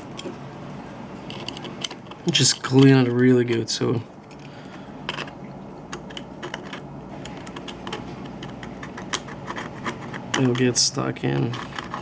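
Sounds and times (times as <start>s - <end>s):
tool scraping and clicking: 1.2s - 3.7s, 5.1s - 12.0s.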